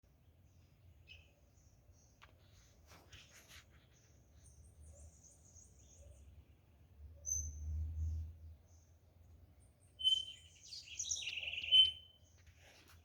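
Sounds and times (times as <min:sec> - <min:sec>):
birds chirping: 0:09.9 - 0:12.5.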